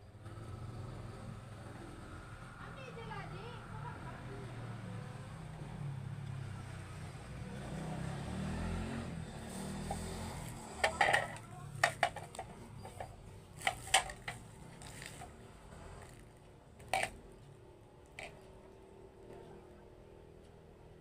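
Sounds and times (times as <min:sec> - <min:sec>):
hard plastic parts knocking: 0:10.7 - 0:15.3, 0:16.8 - 0:17.2.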